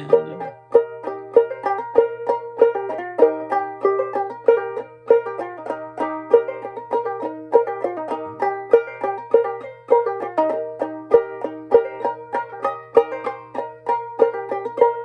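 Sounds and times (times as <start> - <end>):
person singing: 0.0 - 0.5
ukulele plucked: 0.0 - 15.0.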